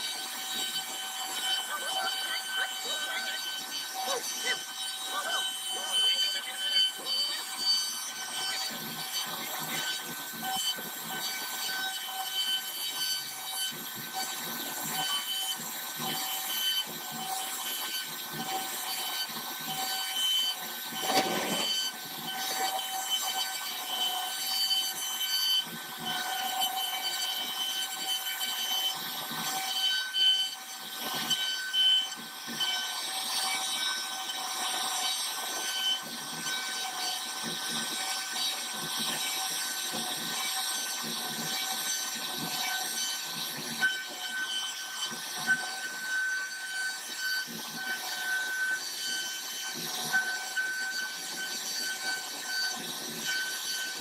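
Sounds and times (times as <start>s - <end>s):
bit rasping through wood: 0.0s - 32.0s
router spindle whine: 0.0s - 54.0s.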